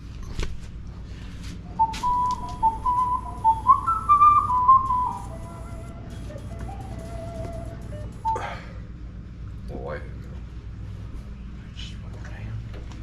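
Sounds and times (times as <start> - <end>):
person whistling a melody: 1.6 - 8.6.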